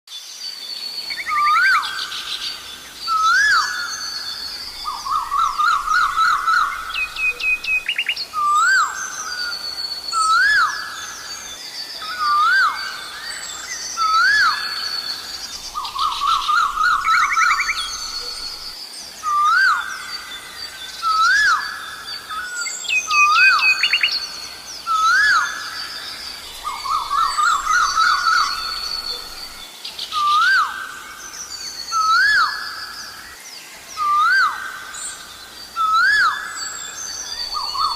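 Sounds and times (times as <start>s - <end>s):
small birds chirping faintly: 0.1s - 37.9s
bird whistled swooping call: 3.0s - 11.2s, 14.0s - 20.3s, 24.9s - 30.8s, 31.9s - 32.9s.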